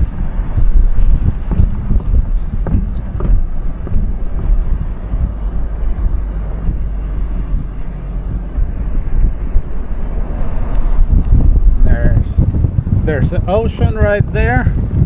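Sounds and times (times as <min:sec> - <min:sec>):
road and wind noise: 0:00.0 - 0:15.0
short knocks: 0:01.2 - 0:05.3.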